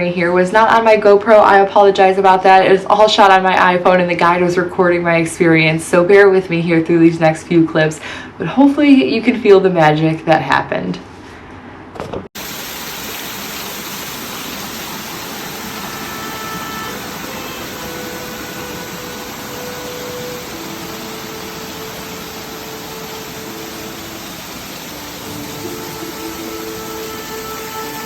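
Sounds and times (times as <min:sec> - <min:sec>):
waterfall rushing: 0:12.4 - 0:28.0.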